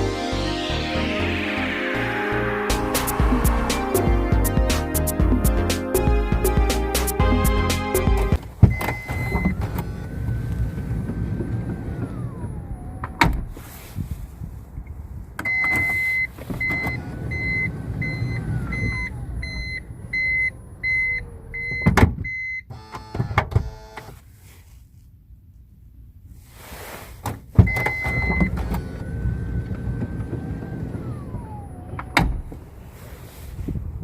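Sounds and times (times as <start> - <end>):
repeated beeping: 8.0 - 10.4
sliding door motor whine: 8.3 - 13.6, 16.6 - 21.9, 27.7 - 33.1.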